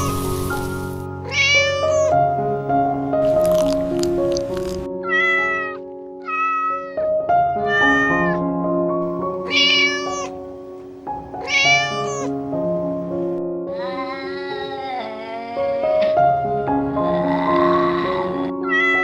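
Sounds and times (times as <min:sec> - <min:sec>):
background music with held notes: 0:00.0 - 0:19.0
cat meowing: 0:01.2 - 0:02.2, 0:05.0 - 0:08.4, 0:09.4 - 0:10.4, 0:11.4 - 0:12.4, 0:18.6 - 0:19.0.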